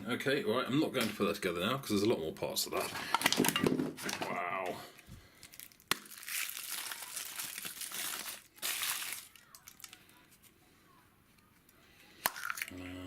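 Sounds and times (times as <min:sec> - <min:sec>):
wrapper crinkling: 0:05.0 - 0:10.5, 0:12.3 - 0:12.7.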